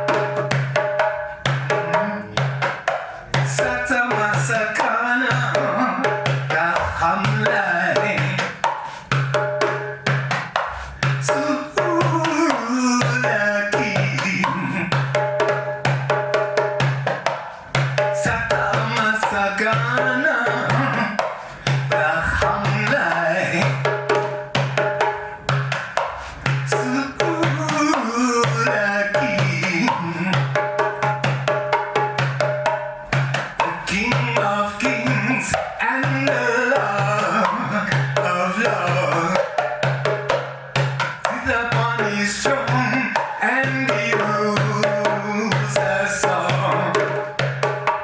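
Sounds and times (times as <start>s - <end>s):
hand drums beating: 0.0s - 48.0s.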